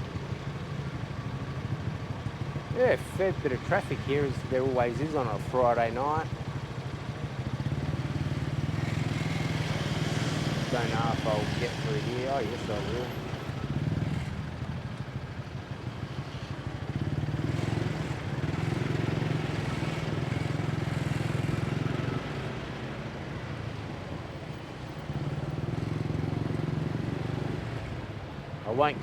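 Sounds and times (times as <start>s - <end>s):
wind and road noise: 0.0s - 29.0s
motorbike engine running: 0.1s - 22.1s.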